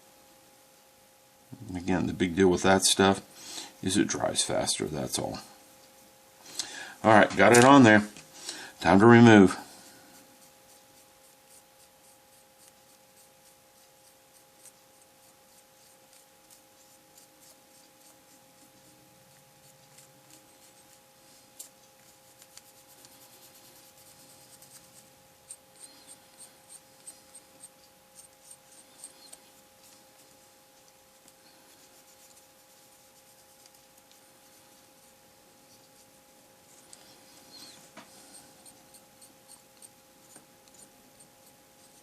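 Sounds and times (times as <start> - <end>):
faint steady hum: 0.0 - 42.0
brush scratching on plastic: 10.1 - 42.0.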